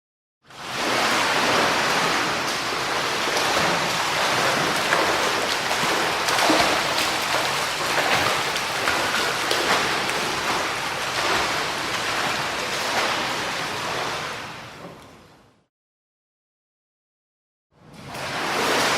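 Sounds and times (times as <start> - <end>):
swimmer splashing water: 0.6 - 14.4.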